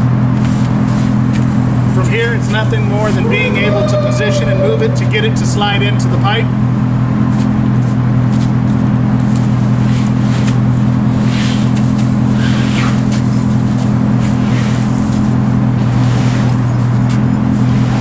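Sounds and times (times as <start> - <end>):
engine humming steadily: 4.5 - 18.0.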